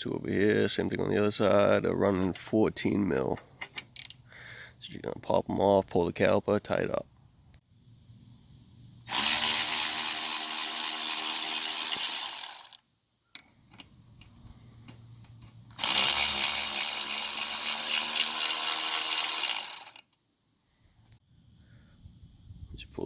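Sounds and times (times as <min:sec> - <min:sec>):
power tool running: 0:09.1 - 0:12.8, 0:15.8 - 0:20.0.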